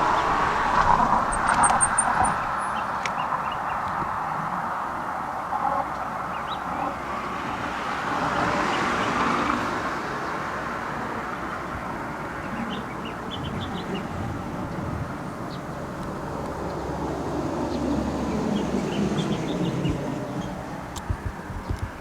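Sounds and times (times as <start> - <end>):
passing traffic hiss: 0.0 - 3.8
vehicle passing: 0.0 - 3.9, 7.5 - 22.0.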